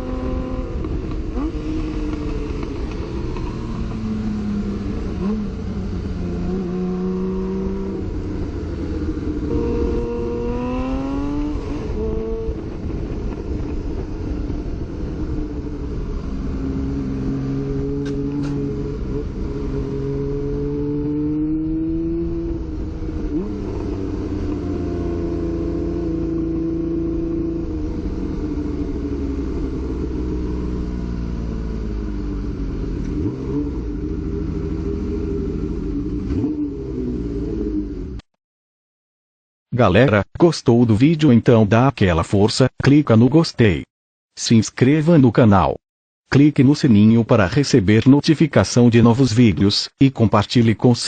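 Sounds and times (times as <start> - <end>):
motorcycle engine revving: 0.0 - 38.3.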